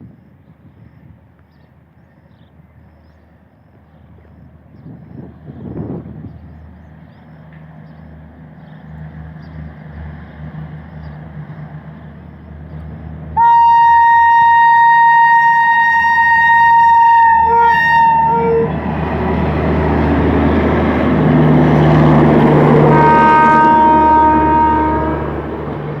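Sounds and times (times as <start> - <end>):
train rumbling: 0.0 - 26.0
locomotive horn blast: 13.3 - 18.9, 21.3 - 25.6.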